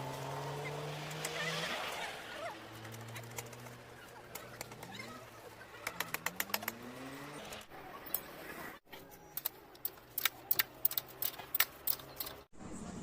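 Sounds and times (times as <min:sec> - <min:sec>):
metallic clicks of hand tools: 0:09.3 - 0:12.5.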